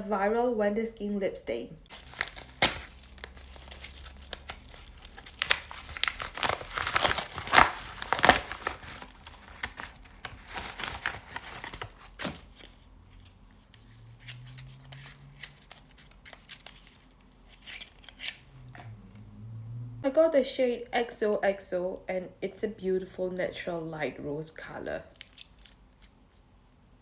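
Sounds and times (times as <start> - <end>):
packaging crinkling and tearing: 1.9 - 12.8
clicks and rustles of handling: 1.9 - 18.9.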